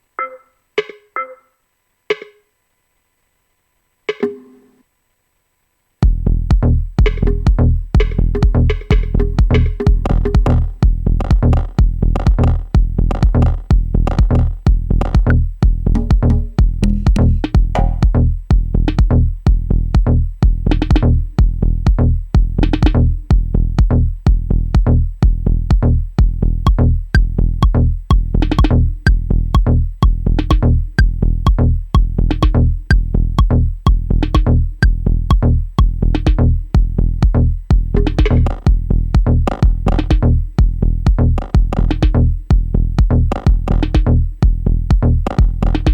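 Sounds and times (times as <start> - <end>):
deep bass: 6.0 - 45.9
dub techno groove: 6.0 - 45.9
kick drum: 6.0 - 45.9.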